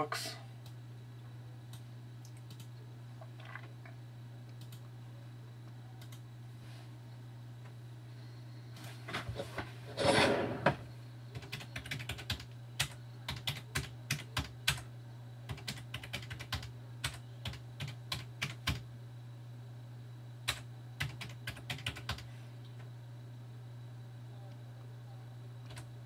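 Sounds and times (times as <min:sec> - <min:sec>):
steady low hum: 0:00.0 - 0:26.0
typing on computer keyboard: 0:11.4 - 0:14.8, 0:15.5 - 0:18.8, 0:20.5 - 0:22.2.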